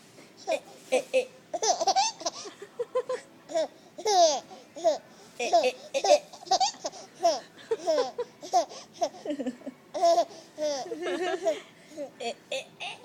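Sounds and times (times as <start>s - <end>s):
baby laughing: 1.6s - 2.5s, 3.1s - 9.2s, 10.0s - 11.6s.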